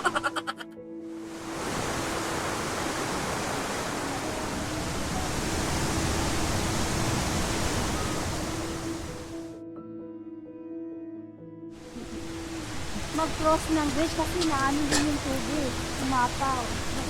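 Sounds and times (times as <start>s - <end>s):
rushing waterfall: 0.0s - 9.5s, 11.8s - 17.0s.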